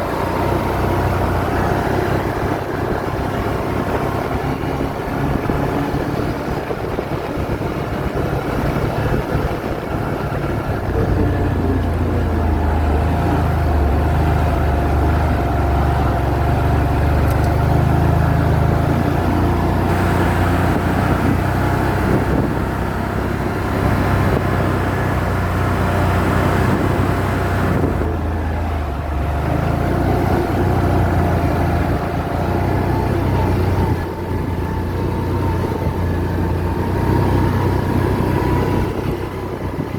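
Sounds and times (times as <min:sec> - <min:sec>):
atv engine running: 0:00.0 - 0:39.9.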